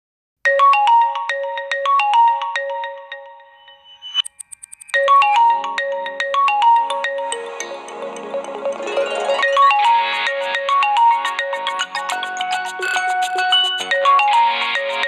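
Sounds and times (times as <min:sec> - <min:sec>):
marimba-like ringtone melody: 0:00.5 - 0:15.0
high clicks: 0:04.1 - 0:05.0.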